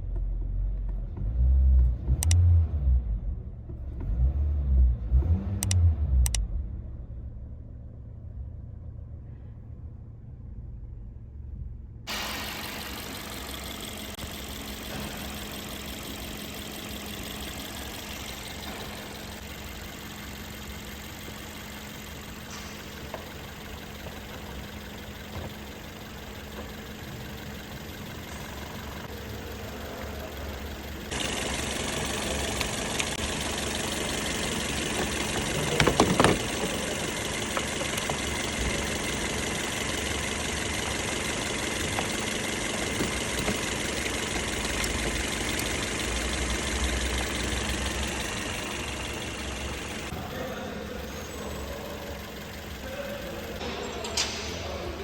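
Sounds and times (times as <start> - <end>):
car engine idling: 3.0 - 55.0
loud engine knocks: 34.8 - 39.3.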